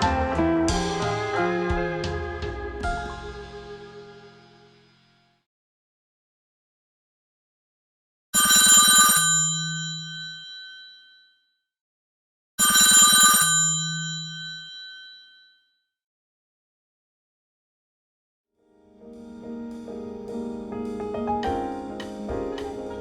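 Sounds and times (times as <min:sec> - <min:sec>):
telephone bell ringtone: 0:08.4 - 0:11.4, 0:12.6 - 0:15.6.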